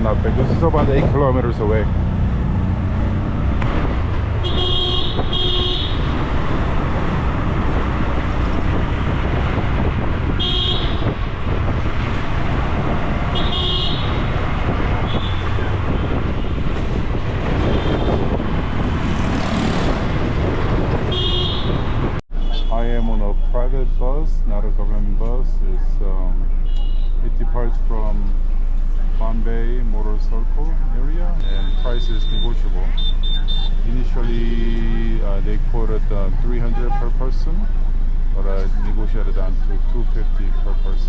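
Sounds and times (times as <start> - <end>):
auto-rickshaw engine: 0.0 - 41.0
short horn beeps: 31.4 - 33.8.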